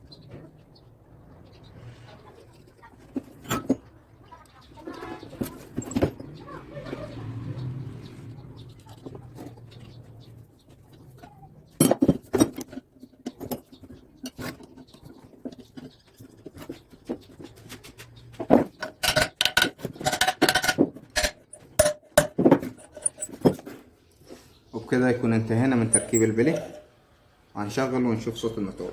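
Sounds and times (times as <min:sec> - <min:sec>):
metal parts clinking: 0:02.5 - 0:03.9, 0:05.1 - 0:06.4, 0:11.7 - 0:15.6, 0:18.5 - 0:23.8, 0:25.7 - 0:26.9.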